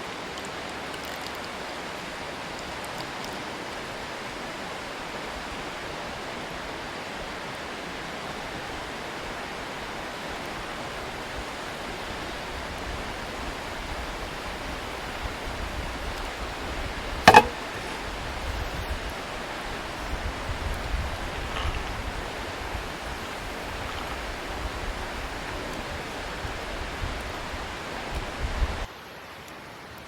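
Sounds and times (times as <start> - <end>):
loud knock: 17.3 - 17.6.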